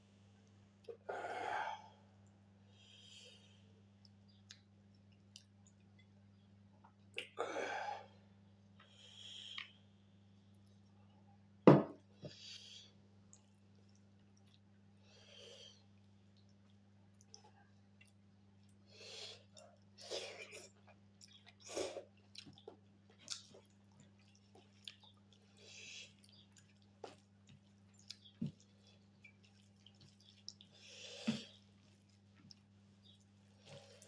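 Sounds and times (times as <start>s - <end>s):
close chewing with mouth clicks: 4.0s - 6.1s, 13.2s - 15.0s, 15.8s - 34.0s.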